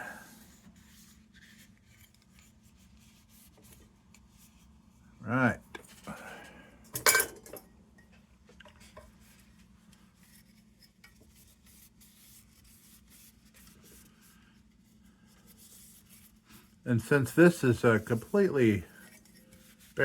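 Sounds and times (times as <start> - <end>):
faint steady hum: 0.0 - 20.0
metal parts clinking: 6.9 - 7.6.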